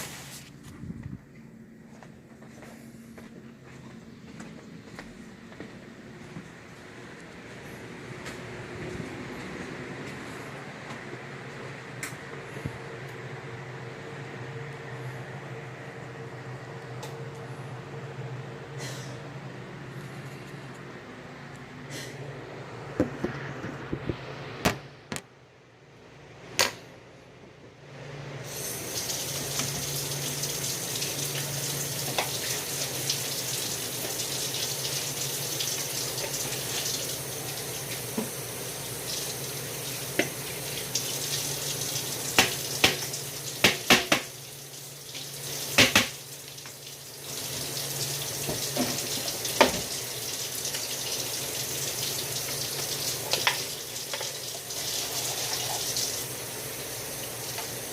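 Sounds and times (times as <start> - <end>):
tap running into sink: 42.3 - 44.4, 45.1 - 46.8, 48.4 - 50.0, 52.5 - 56.0.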